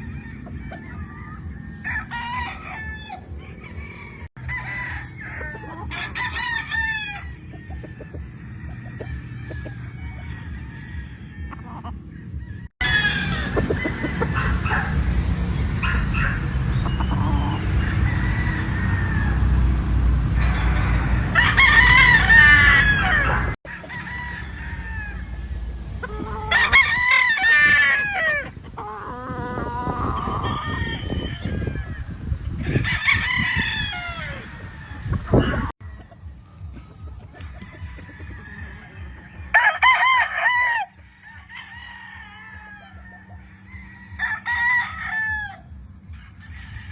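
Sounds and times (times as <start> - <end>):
chickens clucking: 0.0 - 40.8
roosters crowing: 0.0 - 46.9
low rumble: 12.3 - 30.7.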